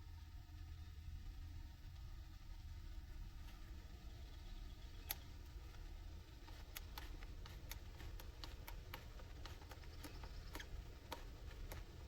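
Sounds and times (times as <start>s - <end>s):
low hum: 0.0s - 12.0s
faint sharp clicks: 5.0s - 12.0s.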